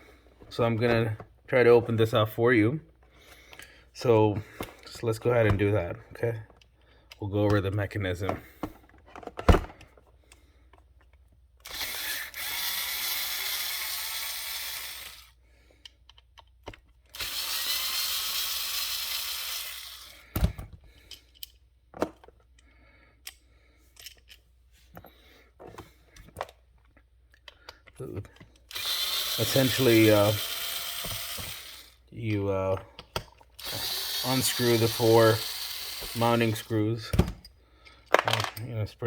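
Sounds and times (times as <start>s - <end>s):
screws and metal parts clicking: 9.8s - 20.4s, 21.0s - 21.7s, 22.4s - 24.5s, 26.1s - 32.0s, 32.7s - 36.9s
cordless power driver running: 11.6s - 15.4s, 17.2s - 20.3s, 28.6s - 32.0s, 33.6s - 36.9s.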